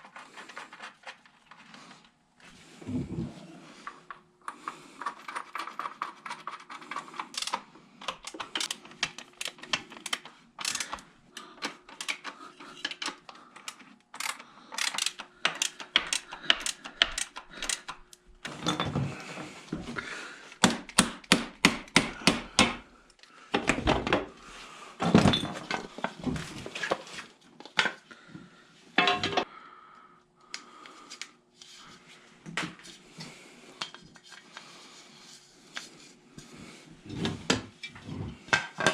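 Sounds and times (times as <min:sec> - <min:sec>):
faint steady hum: 0:22.3 - 0:38.9
metal tools clinking and rattling: 0:29.0 - 0:29.4.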